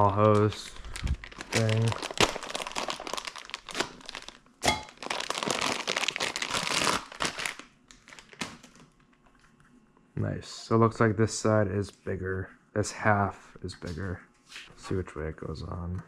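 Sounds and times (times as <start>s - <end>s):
packaging crinkling: 0.0s - 9.1s.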